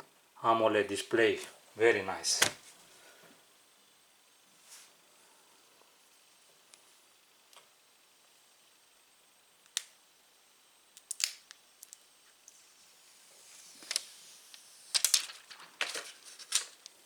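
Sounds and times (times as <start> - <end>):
soft rustle: 4.5 - 5.0.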